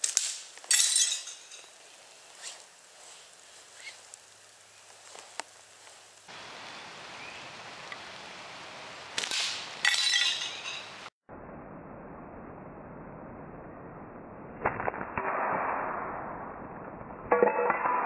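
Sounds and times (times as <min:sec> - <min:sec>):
sharp crack: 0:00.0 - 0:02.8, 0:09.1 - 0:10.8, 0:14.6 - 0:18.0
glass plate shattering: 0:00.7 - 0:01.8, 0:09.8 - 0:10.9, 0:17.3 - 0:18.0.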